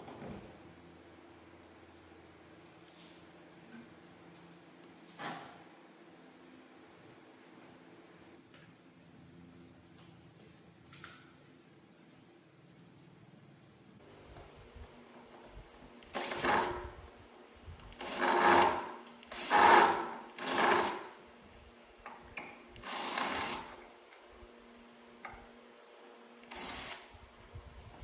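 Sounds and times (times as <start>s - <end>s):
small handheld power tool bursts: 16.1s - 16.9s, 18.0s - 21.2s, 22.8s - 23.8s, 26.4s - 27.2s.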